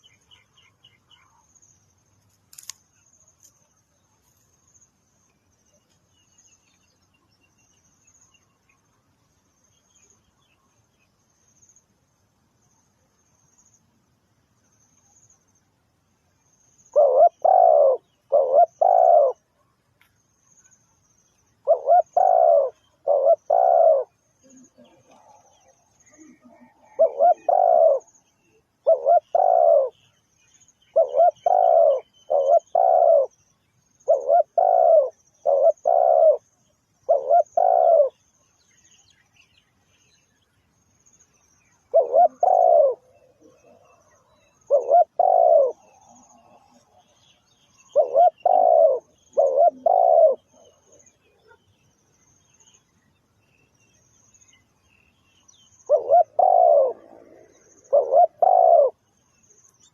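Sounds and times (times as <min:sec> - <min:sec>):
dove cooing: 0:16.9 - 0:19.4, 0:21.6 - 0:30.1, 0:30.9 - 0:33.4, 0:34.0 - 0:36.4, 0:37.0 - 0:38.2, 0:41.9 - 0:47.2, 0:47.8 - 0:51.6, 0:55.8 - 0:59.0.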